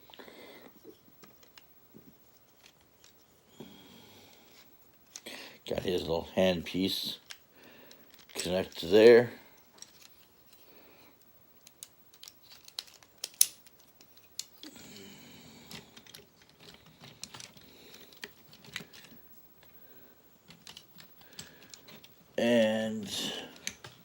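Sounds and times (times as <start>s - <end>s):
plastic toy parts clicking: 8.0s - 8.8s, 11.6s - 14.7s, 15.7s - 19.7s, 20.5s - 22.1s, 23.5s - 24.0s.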